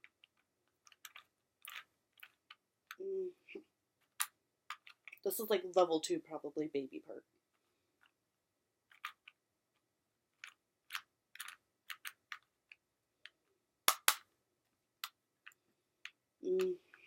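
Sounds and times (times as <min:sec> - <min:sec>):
puzzle cube clicking: 0:00.0 - 0:03.0, 0:04.0 - 0:05.2, 0:08.8 - 0:14.3.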